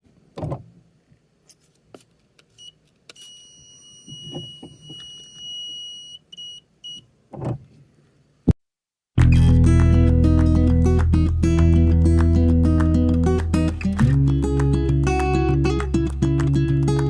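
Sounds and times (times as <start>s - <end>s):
alarm buzzer beeping: 3.2s - 7.0s.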